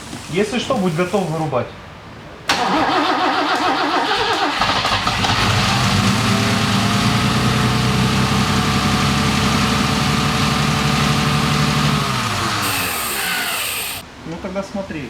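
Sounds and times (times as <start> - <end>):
engine cranking on starter: 2.5 - 14.0
engine idling: 4.6 - 14.0.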